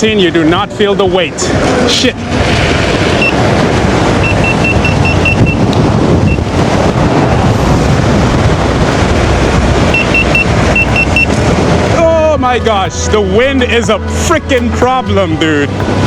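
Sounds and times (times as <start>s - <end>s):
wind rushing over microphone: 0.0s - 16.0s
high-pitched warning beeps: 4.2s - 6.5s, 9.9s - 11.4s.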